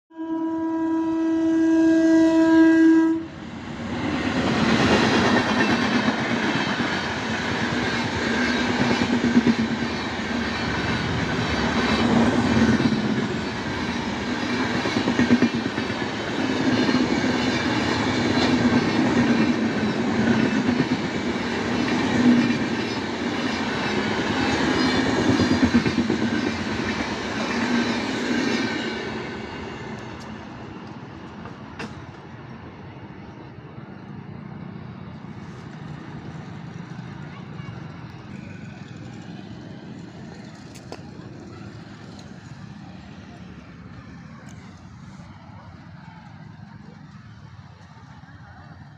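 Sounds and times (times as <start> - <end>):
train horn: 0.1 - 3.3
train passing with rumble: 0.3 - 48.9.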